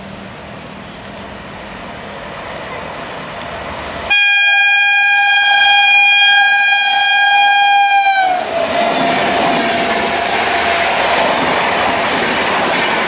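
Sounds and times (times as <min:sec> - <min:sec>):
train rumble: 0:00.0 - 0:13.0
locomotive horn blast: 0:04.1 - 0:08.5.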